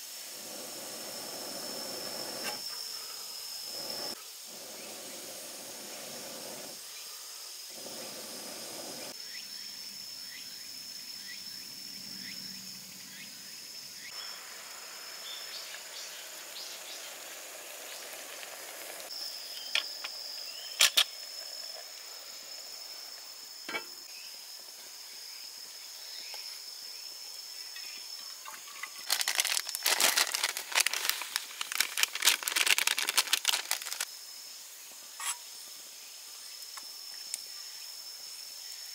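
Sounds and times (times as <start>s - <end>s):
insect trilling: 0.1s - 24.3s, 28.0s - 34.4s.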